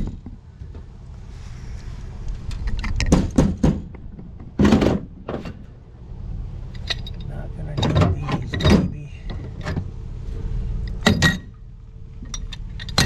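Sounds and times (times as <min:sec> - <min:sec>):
steady low hum: 0:00.0 - 0:13.0
metal fittings and tools clattering: 0:06.7 - 0:09.8, 0:12.2 - 0:13.0.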